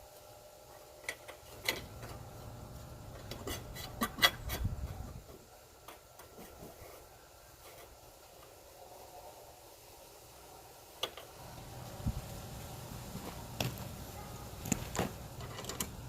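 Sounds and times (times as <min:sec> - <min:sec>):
hand tools clicking and tapping: 0:14.6 - 0:16.0.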